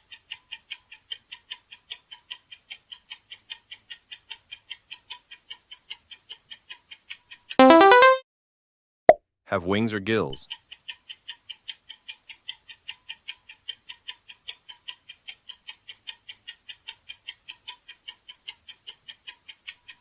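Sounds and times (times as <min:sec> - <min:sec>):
countdown timer ticking: 0:07.6 - 0:08.2.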